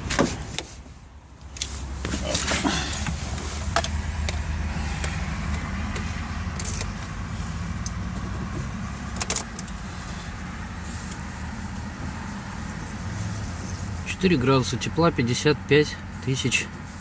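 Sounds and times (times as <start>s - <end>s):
car engine running cold: 0.0s - 17.0s.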